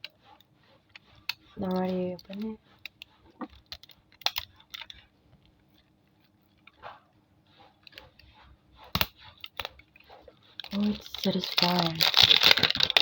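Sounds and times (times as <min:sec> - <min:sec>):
plastic film crinkling: 0:01.5 - 0:02.6, 0:10.6 - 0:13.0.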